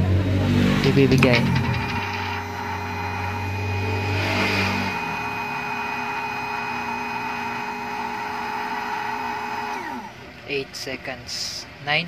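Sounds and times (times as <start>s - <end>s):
low hum: 0.0s - 7.9s
water pump motor whine: 0.8s - 10.6s.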